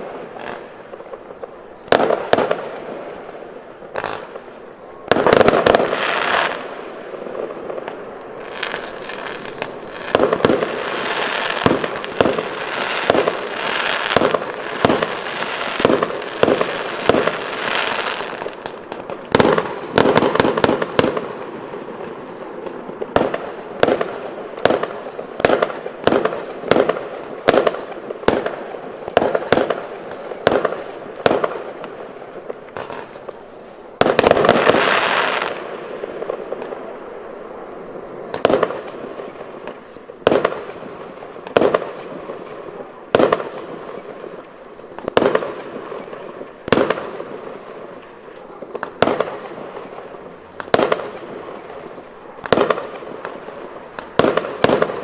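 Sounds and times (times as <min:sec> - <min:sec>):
fireworks bangs: 0:00.0 - 0:55.0
fireworks crackling: 0:00.0 - 0:55.0.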